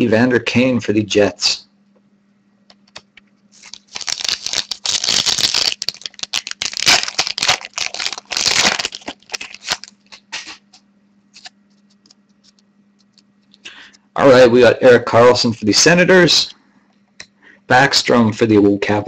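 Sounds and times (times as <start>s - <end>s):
foil wrapper tearing and crinkling: 3.6s - 10.8s.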